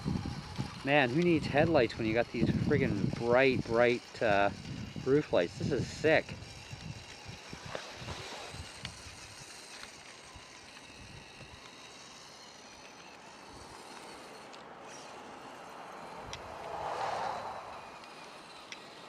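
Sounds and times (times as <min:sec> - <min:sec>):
toy car motor and gears whirring: 0:00.0 - 0:19.0
tyre noise on pavement: 0:00.0 - 0:19.0.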